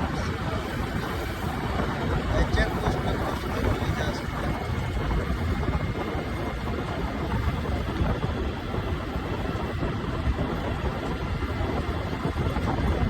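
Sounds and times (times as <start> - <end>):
combine harvester engine rumbling: 0.0 - 13.0.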